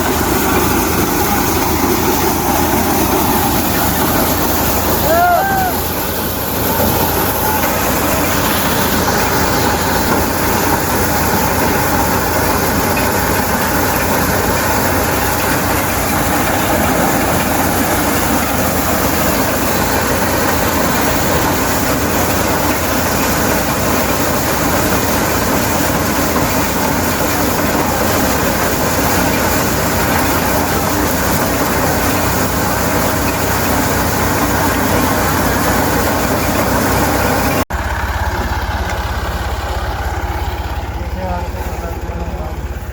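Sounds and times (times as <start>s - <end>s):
corn sheller machine running: 0.0s - 42.9s.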